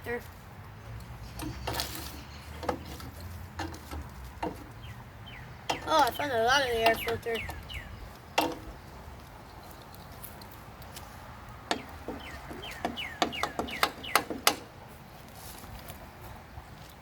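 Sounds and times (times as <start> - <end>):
bird chirping: 0.8 - 3.6, 4.4 - 10.2, 11.7 - 14.5.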